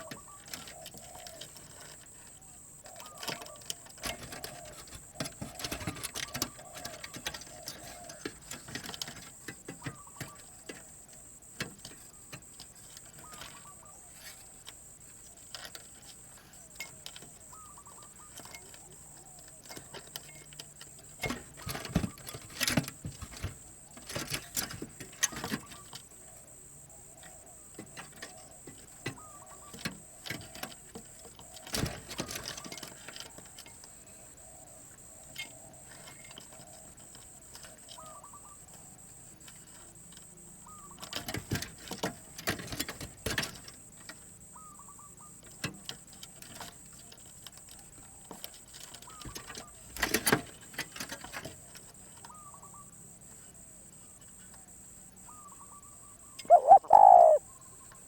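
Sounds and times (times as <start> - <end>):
faint short bird calls: 55.3 - 57.8.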